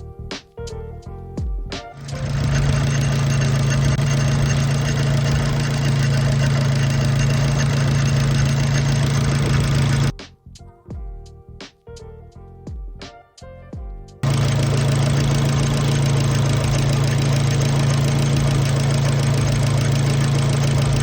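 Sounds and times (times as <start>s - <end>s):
drive belt noise: 1.9s - 10.1s, 14.2s - 21.0s
car engine idling: 2.0s - 10.1s, 14.2s - 21.0s.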